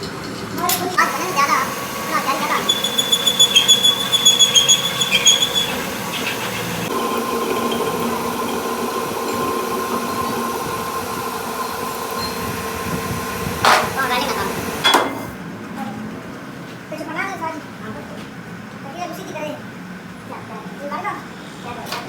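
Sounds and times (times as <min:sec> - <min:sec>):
machine whining and pulsing: 0:01.0 - 0:15.4.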